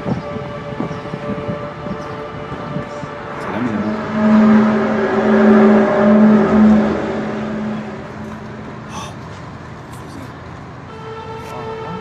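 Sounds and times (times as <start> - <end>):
loud droning tone: 0.0 - 9.4.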